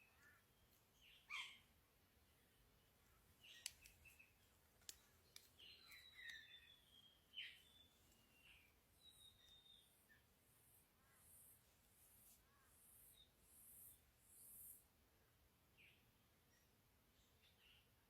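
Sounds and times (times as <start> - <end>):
sharp clicks: 3.5 - 4.1, 4.8 - 6.4.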